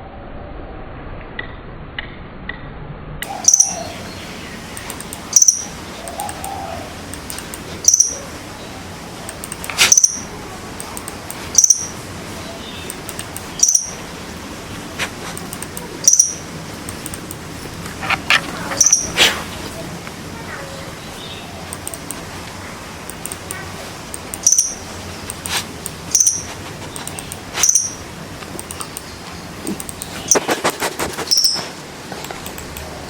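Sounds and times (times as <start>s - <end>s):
high-pitched chirping squeak: 3.3s - 3.9s, 9.8s - 10.3s, 18.7s - 19.2s, 24.4s - 24.8s, 26.1s - 28.0s, 31.2s - 31.8s.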